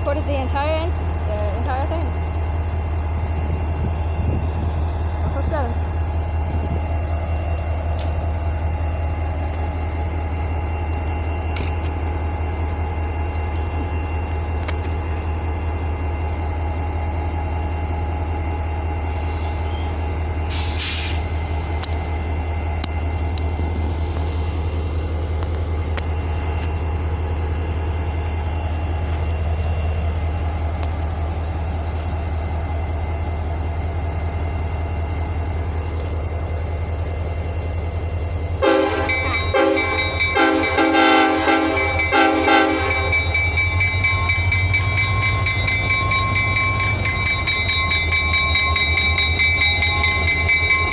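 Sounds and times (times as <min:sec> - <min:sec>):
diesel locomotive idling: 0:00.0 - 0:50.9
air brakes hissing: 0:19.1 - 0:21.5.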